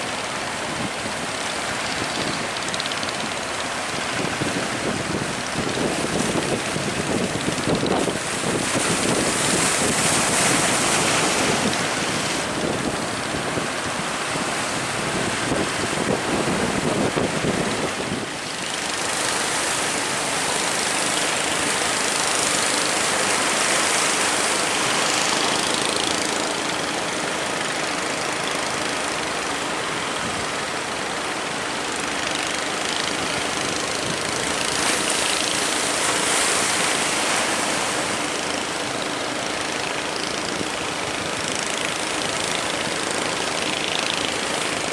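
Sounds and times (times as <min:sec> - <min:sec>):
heavy wind noise: 0:04.0 - 0:18.5.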